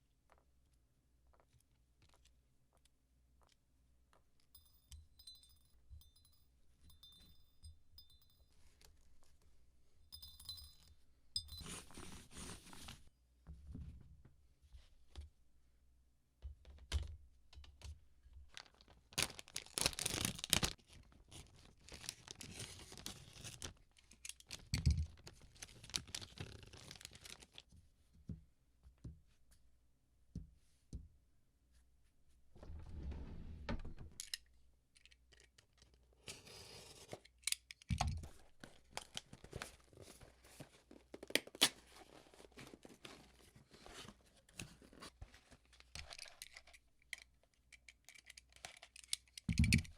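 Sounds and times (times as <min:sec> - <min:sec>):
packaging tearing and crinkling: 0:18.5 - 0:23.8, 0:24.4 - 0:27.6.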